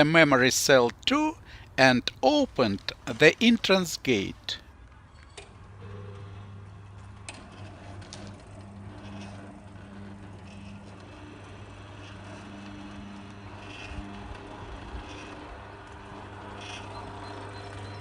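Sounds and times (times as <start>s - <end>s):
gate motor humming: 5.4s - 18.0s.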